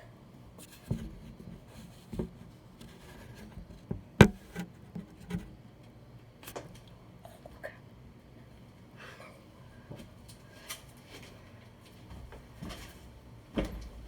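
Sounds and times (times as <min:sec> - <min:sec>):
knocks and thumps: 0:03.9 - 0:05.1.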